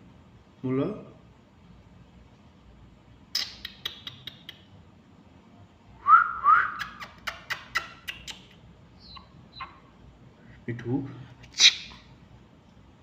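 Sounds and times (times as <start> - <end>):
parrot chirping and clicking: 3.3 - 4.8, 6.8 - 9.8.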